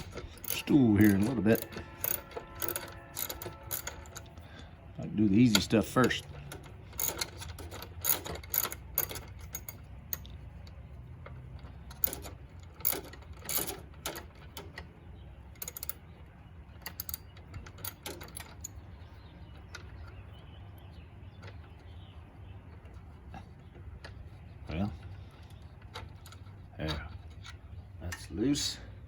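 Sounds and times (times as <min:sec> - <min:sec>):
ratchet wrench clicking: 0:00.0 - 0:04.3, 0:05.5 - 0:10.3.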